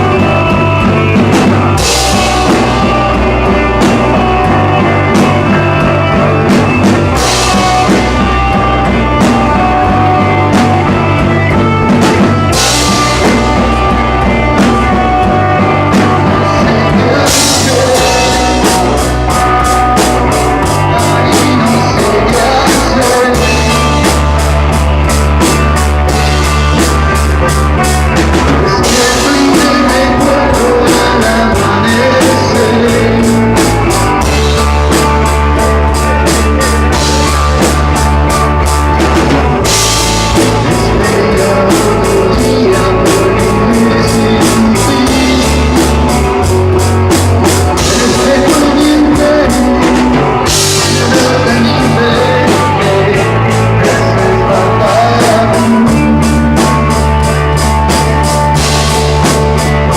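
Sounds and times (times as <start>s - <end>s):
drum kit fast beat: 0.0s - 59.9s
rock band playing live: 0.0s - 59.9s.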